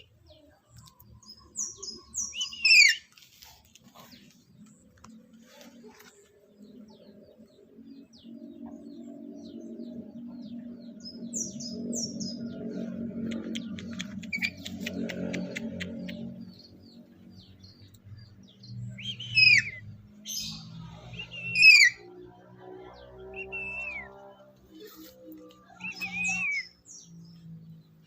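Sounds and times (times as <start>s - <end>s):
parrot clicking chatter: 13.3s - 16.2s.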